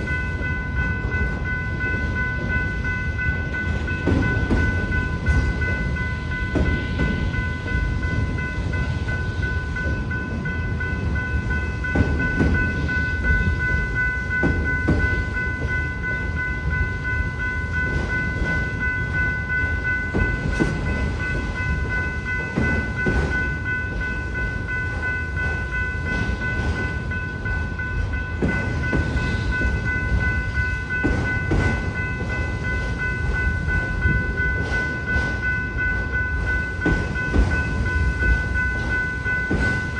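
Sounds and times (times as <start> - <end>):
crossing signal bell ringing: 0.0 - 39.9
freight train rumbling: 0.0 - 39.9
train wheel knocks: 3.7 - 5.8.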